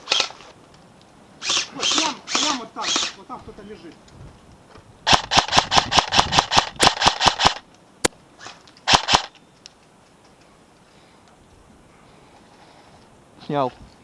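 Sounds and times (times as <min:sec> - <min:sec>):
airsoft rifle shots: 0:01.4 - 0:03.2, 0:05.0 - 0:09.3.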